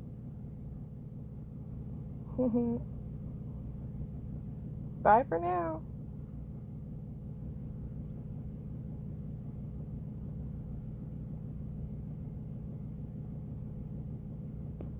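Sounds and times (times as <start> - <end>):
fan motor humming: 0.0 - 14.9.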